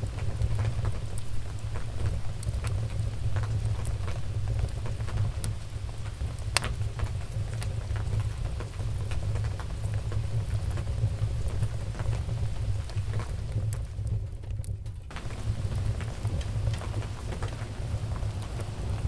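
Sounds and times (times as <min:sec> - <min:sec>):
low fire rumble: 0:00.0 - 0:19.0
wood fire crackling: 0:00.0 - 0:19.0.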